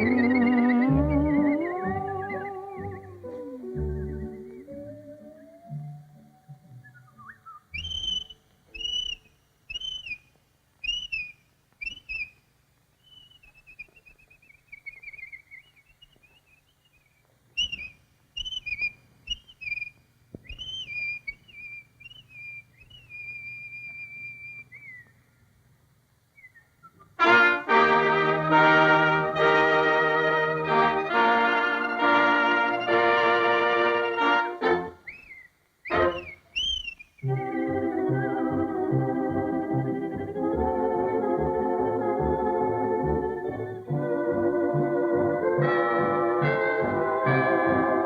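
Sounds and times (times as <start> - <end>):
whistled bird calls: 0.0 - 12.4, 13.0 - 25.2, 26.4 - 27.2, 35.0 - 38.4.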